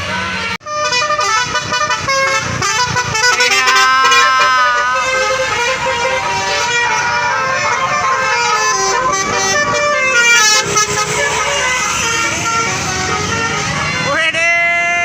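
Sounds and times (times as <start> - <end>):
bus musical horn tune: 0.0 - 14.1.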